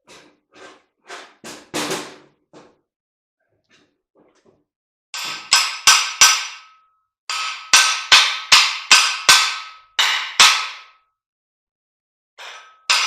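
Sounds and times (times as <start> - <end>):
hammer striking metal: 5.2 - 11.0, 12.4 - 13.0.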